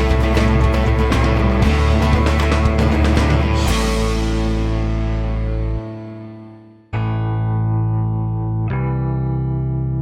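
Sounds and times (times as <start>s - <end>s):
rock music with drums: 0.0s - 6.4s.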